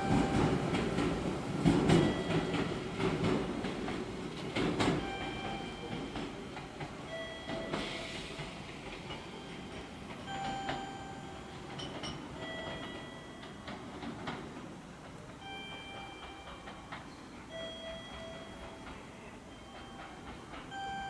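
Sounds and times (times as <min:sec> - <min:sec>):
electric train rumbling: 0:00.0 - 0:21.0.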